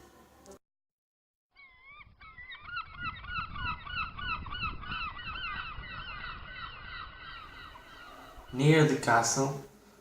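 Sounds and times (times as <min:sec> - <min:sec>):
gulls crying: 0:01.7 - 0:09.4.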